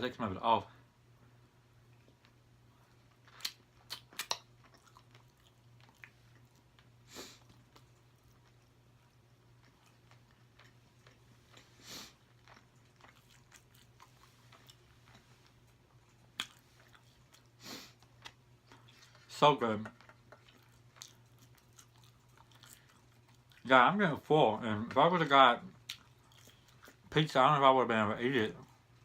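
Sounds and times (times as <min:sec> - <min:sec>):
faint low hum: 0:00.0 - 0:29.0
chewing mouth sounds: 0:01.9 - 0:23.7, 0:25.7 - 0:27.1.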